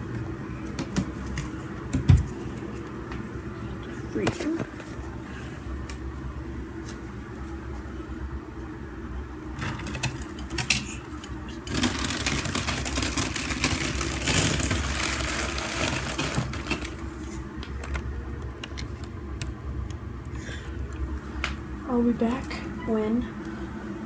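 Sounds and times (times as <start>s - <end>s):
rustling and clattering: 11.7s - 17.0s.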